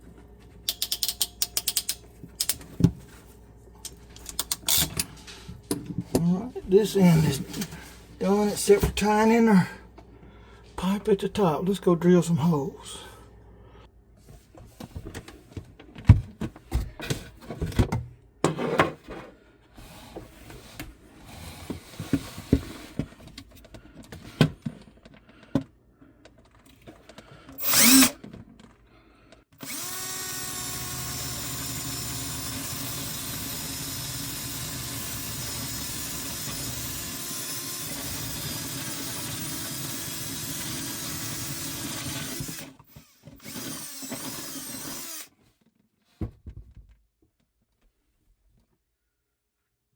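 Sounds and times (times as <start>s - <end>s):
power drill whining: 27.6s - 28.2s, 29.6s - 45.3s.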